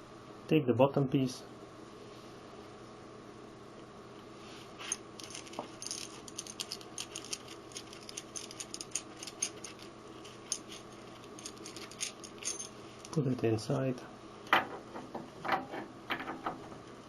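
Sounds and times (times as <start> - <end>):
steady low hum: 0.0 - 17.0
plastic parts clicking and rattling: 5.2 - 9.9.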